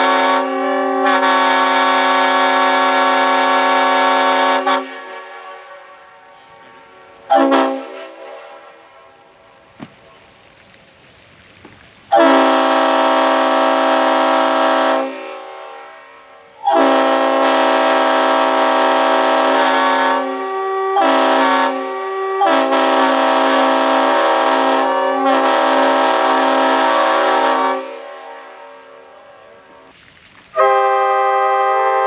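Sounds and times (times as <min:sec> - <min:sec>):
locomotive air horn blasts: 0:00.0 - 0:06.2, 0:07.3 - 0:09.2, 0:12.1 - 0:29.8, 0:30.6 - 0:32.0.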